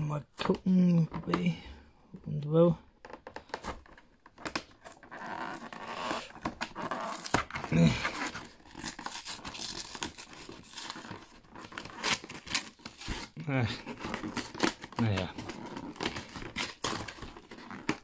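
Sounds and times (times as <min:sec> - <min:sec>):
packaging tearing and crinkling: 0:03.6 - 0:18.0.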